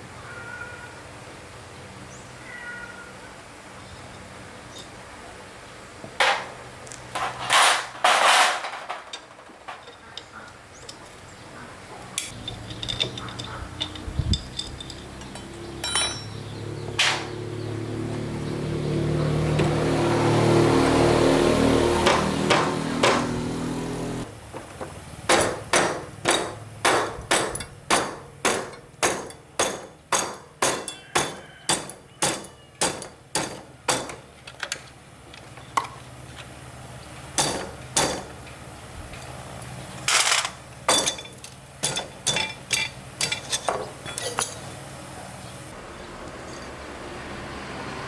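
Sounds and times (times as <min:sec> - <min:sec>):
hammer on metal: 0:22.0 - 0:23.5, 0:25.3 - 0:34.3, 0:37.4 - 0:38.4.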